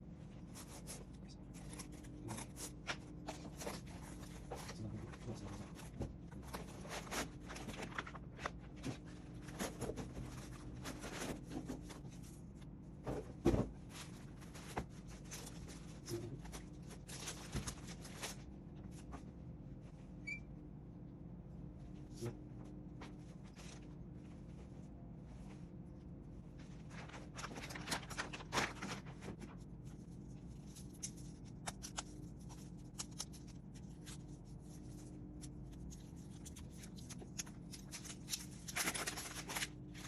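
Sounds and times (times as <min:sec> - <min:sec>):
steady low hum: 0:00.0 - 0:40.0
packaging rustling: 0:26.9 - 0:40.0.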